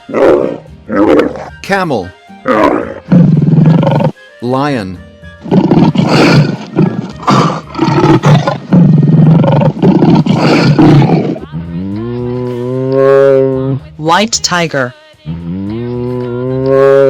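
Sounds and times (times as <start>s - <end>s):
lion roaring: 0.0s - 1.6s, 2.4s - 4.2s, 5.4s - 11.7s.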